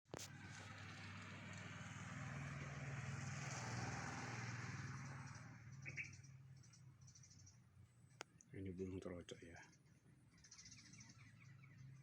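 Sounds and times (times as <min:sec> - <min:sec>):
vehicle engine passing by: 0:00.1 - 0:07.8.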